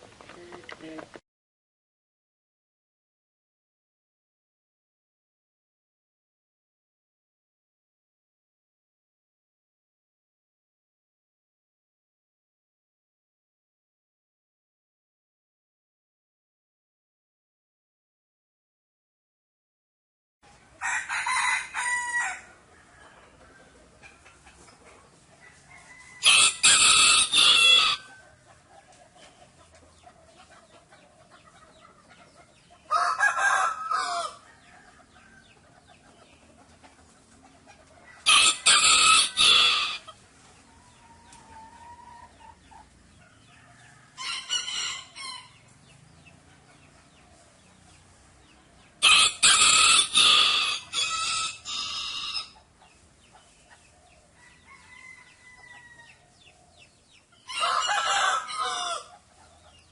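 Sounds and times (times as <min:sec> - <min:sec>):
faint chicken clucking: 0:20.4 - 0:59.9
chickens squawking: 0:20.7 - 0:59.9.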